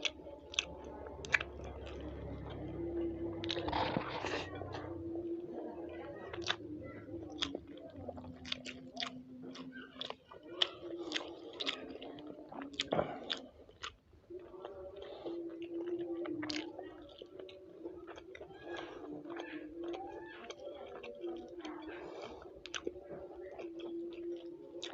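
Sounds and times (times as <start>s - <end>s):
chewing and biting food: 0.0s - 5.0s, 5.9s - 24.9s
steady low hum: 0.0s - 9.5s.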